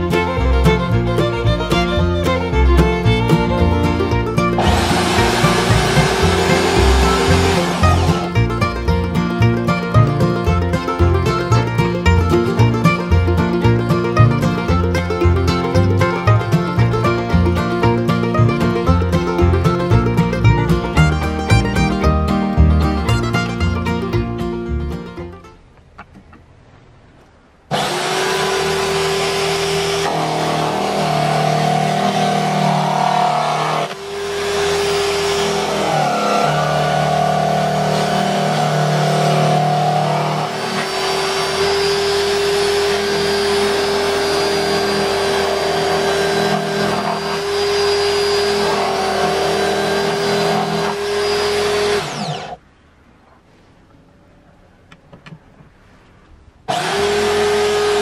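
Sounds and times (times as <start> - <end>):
electric drill motor running: 4.6 - 8.4, 27.7 - 52.6, 56.7 - 58.0.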